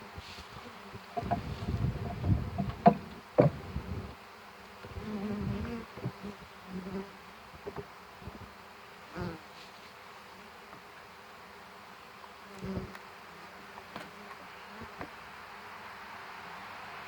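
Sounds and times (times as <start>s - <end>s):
honey bees buzzing: 0.0s - 16.0s
soft knocks of hive gear: 1.2s - 3.7s, 7.6s - 7.9s.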